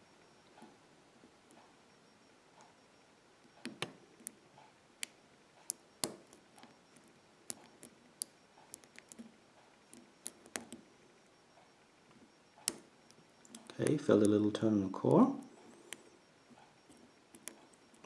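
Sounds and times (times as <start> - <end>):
lock pick clicking in lock: 5.7 - 6.5, 12.6 - 12.9, 17.4 - 17.7.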